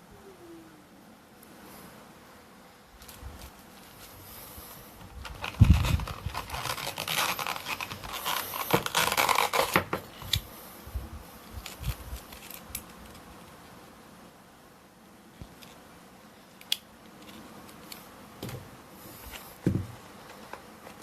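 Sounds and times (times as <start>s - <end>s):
packaging rustling and tearing: 5.0s - 10.4s, 11.6s - 13.2s
thump: 19.6s - 20.0s.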